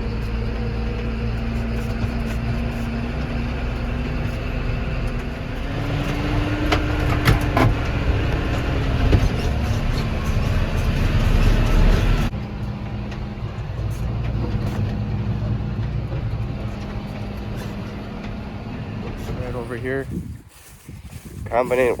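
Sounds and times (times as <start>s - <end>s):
tractor diesel engine rumbling: 0.0s - 22.0s.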